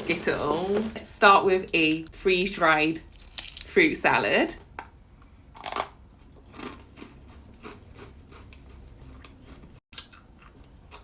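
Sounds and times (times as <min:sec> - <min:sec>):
crunching freeze-dried sweet: 0:01.7 - 0:04.0, 0:05.6 - 0:11.0.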